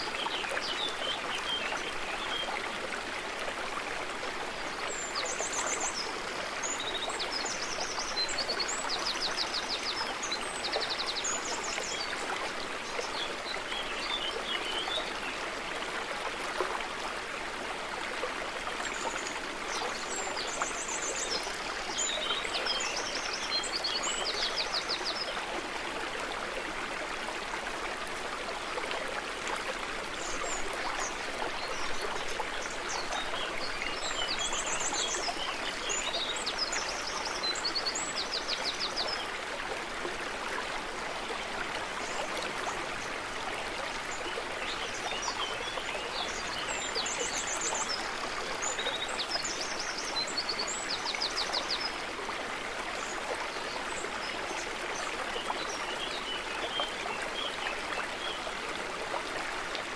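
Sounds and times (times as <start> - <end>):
stream flowing over stones: 0.0 - 59.9.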